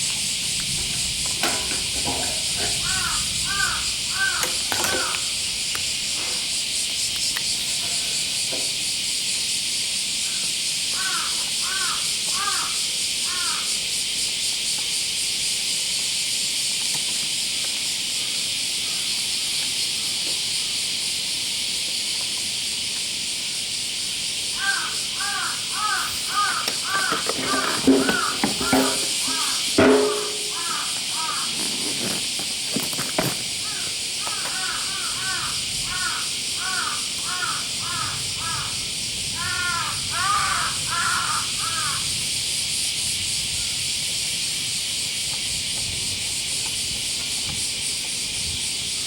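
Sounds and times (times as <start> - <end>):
steady high hiss: 0.0 - 49.0
crows cawing: 1.6 - 5.5, 10.2 - 13.8, 24.6 - 31.8, 33.5 - 42.2.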